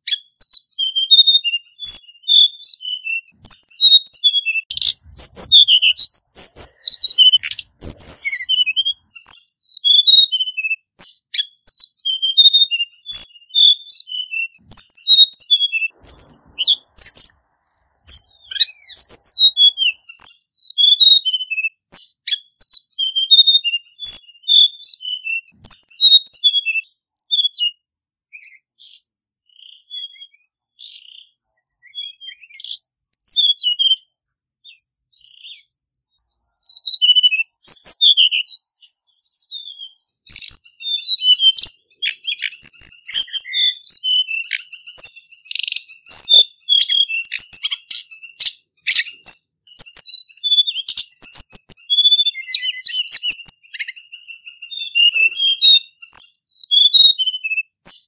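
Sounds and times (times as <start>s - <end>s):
bird singing whistled notes: 0.0s - 58.0s.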